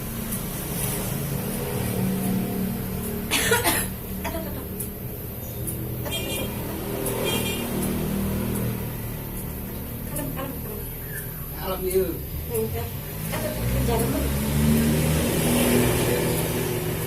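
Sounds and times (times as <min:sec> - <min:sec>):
person coughing harshly: 0:03.3 - 0:04.0.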